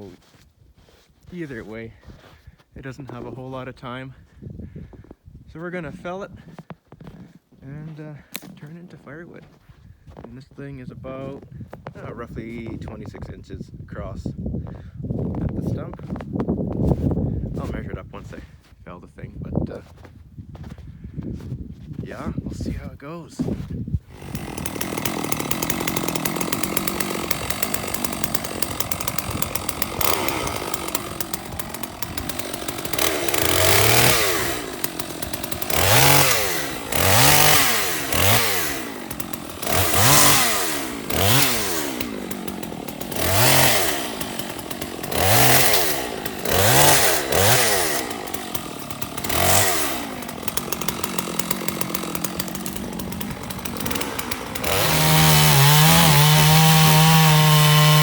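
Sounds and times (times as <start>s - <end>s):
chainsaw engine idling and revving: 5.7s - 10.5s, 24.1s - 58.0s.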